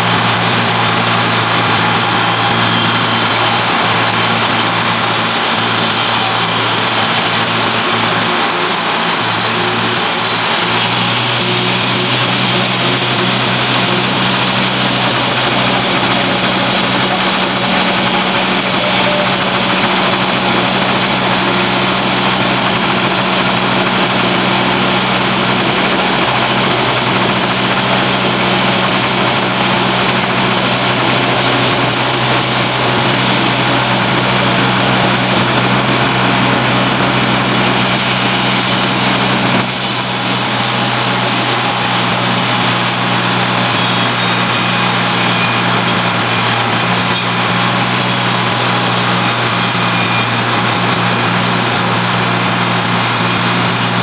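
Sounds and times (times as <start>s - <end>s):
sawmill machinery running: 0.0s - 54.0s.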